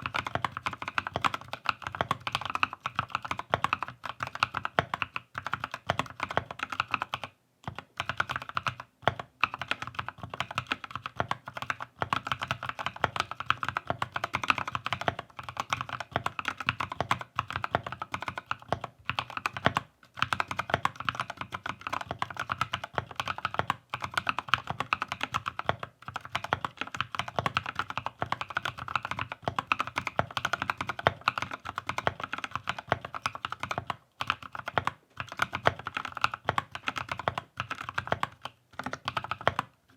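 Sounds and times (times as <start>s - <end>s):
mechanical keyboard typing: 0.0s - 39.8s.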